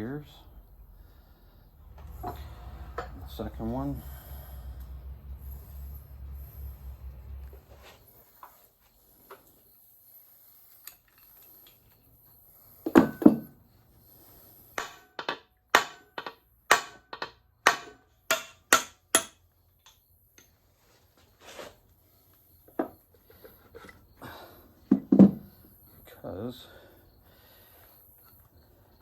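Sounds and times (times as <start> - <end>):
hammer blows on metal parts: 14.7 - 20.5.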